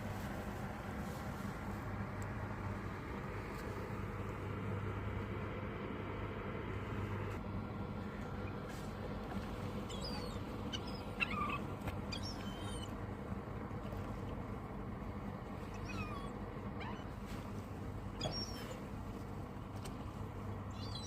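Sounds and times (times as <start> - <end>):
low background rumble: 0.0 - 21.0
seagulls calling: 9.4 - 13.2, 15.6 - 17.3, 18.1 - 18.9, 20.7 - 21.0.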